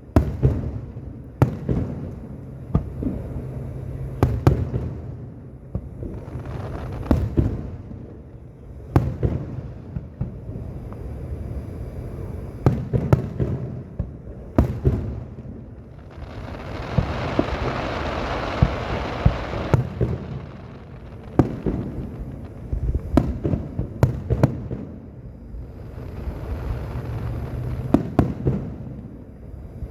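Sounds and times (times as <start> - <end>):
hissing crackle of fireworks: 0.0 - 29.9
firework shells bursting with booms: 5.7 - 11.1, 12.6 - 29.6.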